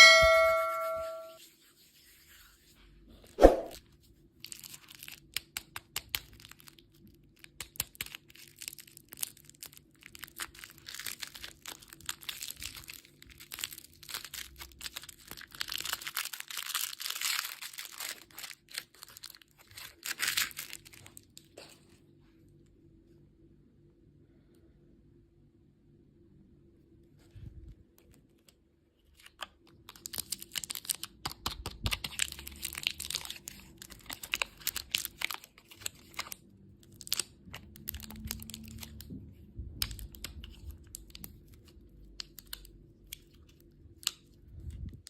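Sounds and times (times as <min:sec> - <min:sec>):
candy packaging crinkling: 0:04.4 - 0:21.9, 0:28.0 - 0:39.1, 0:39.8 - 0:44.7.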